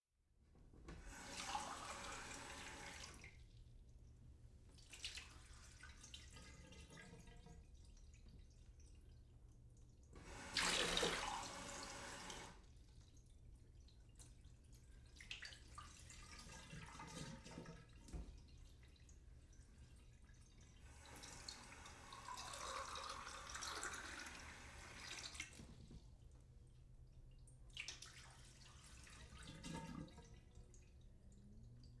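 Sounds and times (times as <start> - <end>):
small clicks and drips: 3.0 - 10.2, 12.5 - 32.0
tap water filling a glass: 15.3 - 19.2, 21.1 - 26.1, 29.1 - 30.7.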